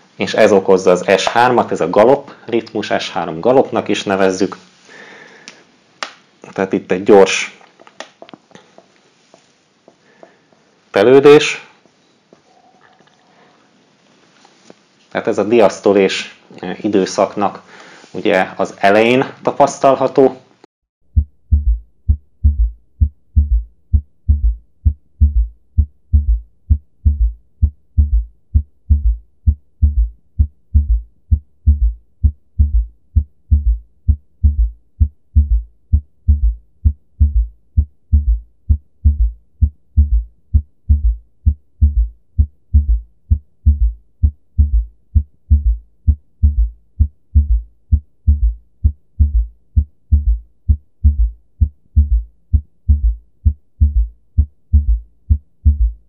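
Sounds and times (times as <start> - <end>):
heart beating with gallop rhythm: 21.1 - 56.0.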